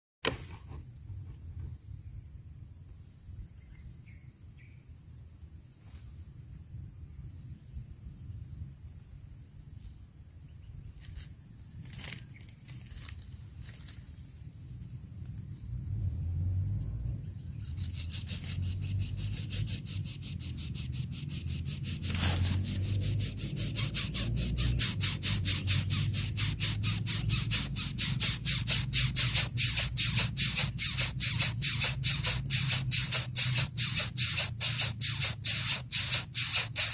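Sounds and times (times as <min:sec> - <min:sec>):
cricket trilling: 0:00.8 - 0:36.9
rhythmic rasping hiss: 0:17.8 - 0:36.9.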